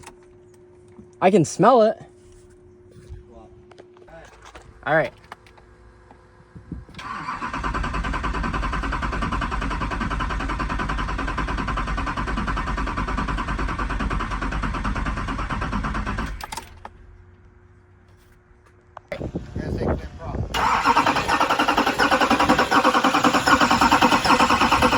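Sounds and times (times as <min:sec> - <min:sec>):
diesel engine cranking: 0:06.9 - 0:17.2, 0:20.5 - 0:24.9.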